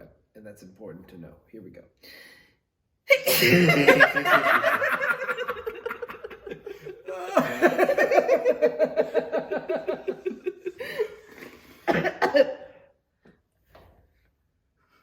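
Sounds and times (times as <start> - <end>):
people laughing hard: 3.1 - 12.7.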